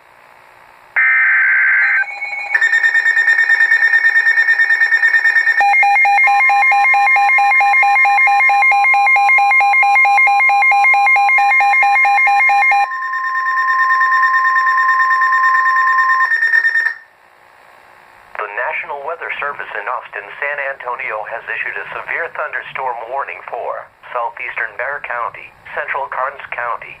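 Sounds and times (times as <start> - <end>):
pulsing electronic alert warble: 1.0 - 17.0
steady single alarm tone: 1.0 - 17.1.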